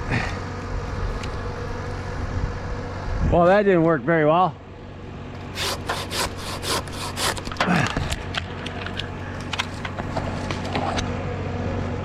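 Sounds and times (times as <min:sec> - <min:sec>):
steady engine hum: 0:00.0 - 0:12.0
handsaw sawing wood: 0:05.5 - 0:07.6.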